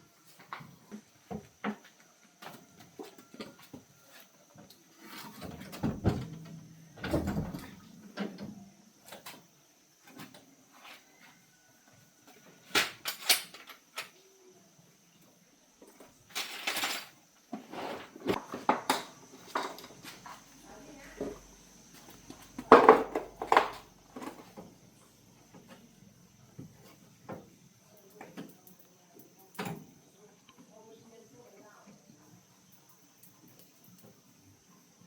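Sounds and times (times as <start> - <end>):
objects knocking and rattling: 22.2 - 24.8.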